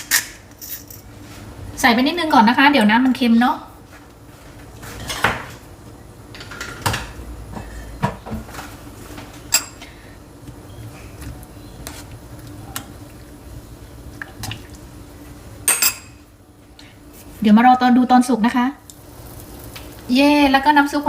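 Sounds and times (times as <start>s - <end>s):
faint steady hum: 0.0s - 21.0s
pots knocking and clinking: 6.3s - 8.7s.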